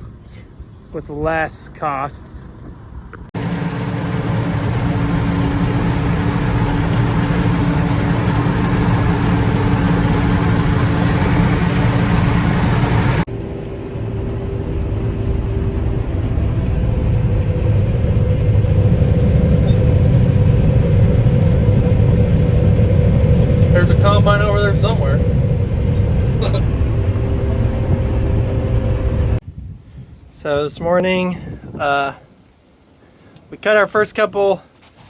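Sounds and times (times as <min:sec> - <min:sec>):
vehicle engine humming: 0:03.2 - 0:29.4
engine hum rising in pitch: 0:03.4 - 0:29.4.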